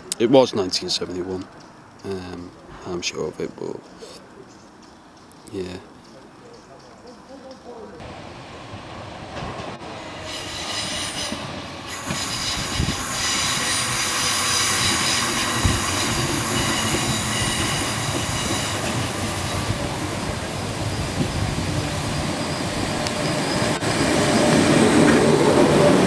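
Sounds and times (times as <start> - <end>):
electric train passing: 8.0 - 26.0
wheels squealing on rails: 8.1 - 26.0.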